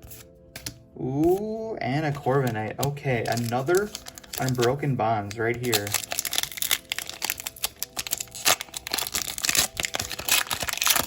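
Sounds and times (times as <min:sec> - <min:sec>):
foil wrapper tearing and crinkling: 0:02.2 - 0:11.0.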